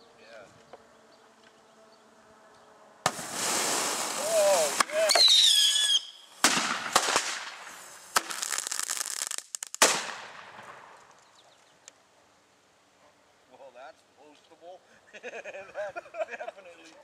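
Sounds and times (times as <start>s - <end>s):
firework bangs: 3.0s - 11.2s
rapid firework crackling: 3.1s - 11.2s
falling whistle: 5.1s - 6.3s.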